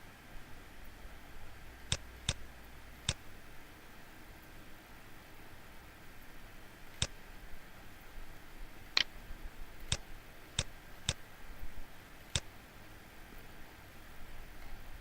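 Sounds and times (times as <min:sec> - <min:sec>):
faint steady hiss: 0:00.0 - 0:15.0
computer mouse button clicking: 0:01.9 - 0:02.4, 0:03.0 - 0:03.2.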